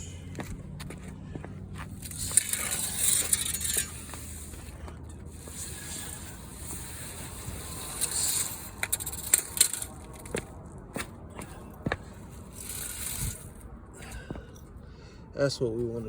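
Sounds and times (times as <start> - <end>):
steady low hum: 0.0 - 16.0
window screen mesh scraping: 1.7 - 10.5, 11.4 - 13.6.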